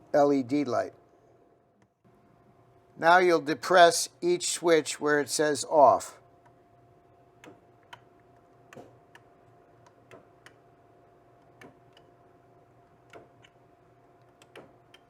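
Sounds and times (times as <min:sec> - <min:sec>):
faint steady hum: 0:00.0 - 0:15.0.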